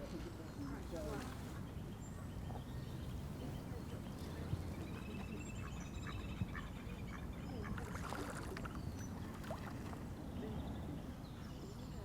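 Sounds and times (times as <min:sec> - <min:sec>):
water birds calling: 0:00.0 - 0:12.0
water lapping: 0:03.4 - 0:10.2.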